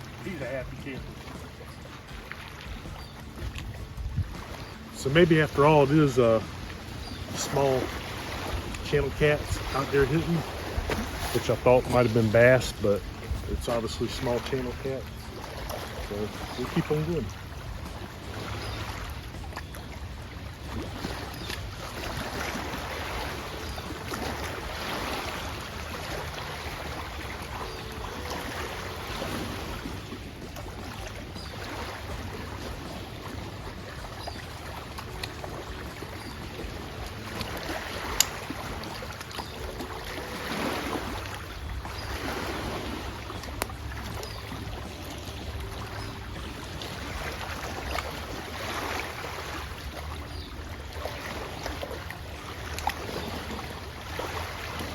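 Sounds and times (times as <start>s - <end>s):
small waves lapping shore: 0.0s - 54.9s
wind rumble on microphone: 2.1s - 5.1s, 12.6s - 14.2s.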